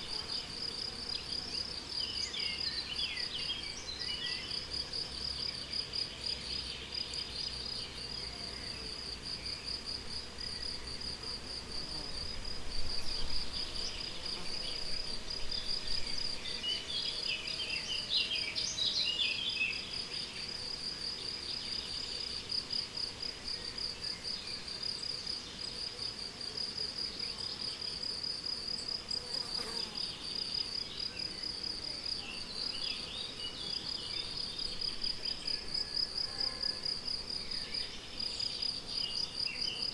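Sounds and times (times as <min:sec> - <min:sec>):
bird song: 0:00.1 - 0:09.7, 0:13.0 - 0:22.4, 0:32.2 - 0:36.7, 0:37.4 - 0:39.9.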